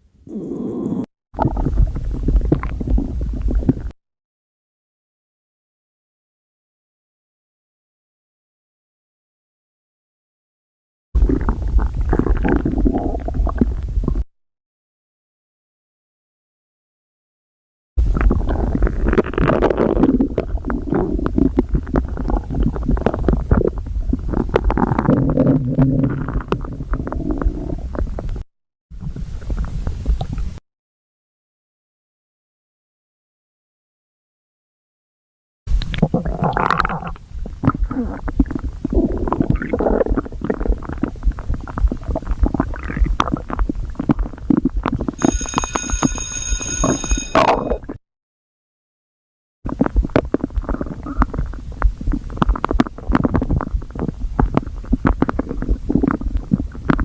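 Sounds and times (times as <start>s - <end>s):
stomach growling and gurgling: 0.2s - 4.0s, 11.2s - 14.3s, 18.0s - 30.6s, 35.7s - 48.0s, 49.7s - 57.0s.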